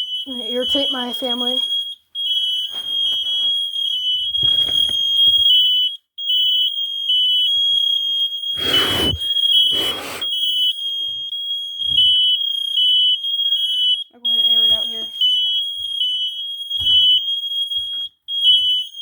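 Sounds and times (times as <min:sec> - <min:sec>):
smoke alarms beeping: 0:00.0 - 0:19.0.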